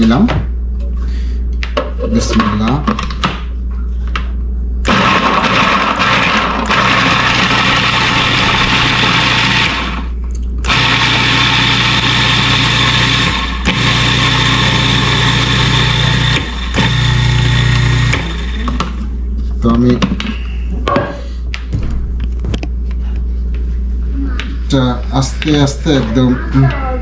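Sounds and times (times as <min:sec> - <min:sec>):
food processor chopping: 0:04.8 - 0:19.0.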